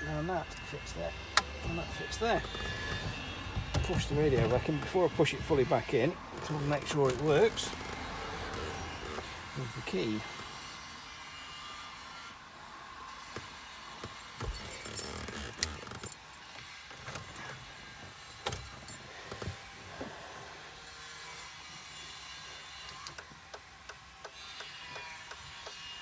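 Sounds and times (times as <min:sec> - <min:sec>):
car keys jangling and clicking: 0:14.2 - 0:19.5.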